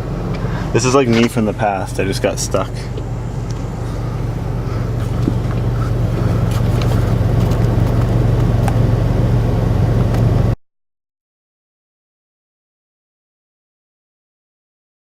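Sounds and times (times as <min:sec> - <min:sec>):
vehicle engine humming: 0:00.0 - 0:10.6.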